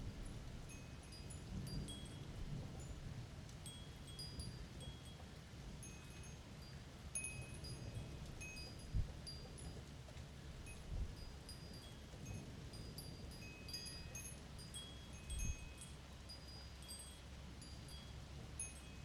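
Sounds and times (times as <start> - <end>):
wind chimes ringing: 10.7 - 19.0.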